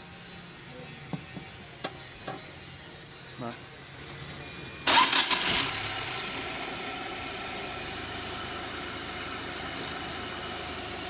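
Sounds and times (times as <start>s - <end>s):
car engine idling: 4.9s - 11.0s.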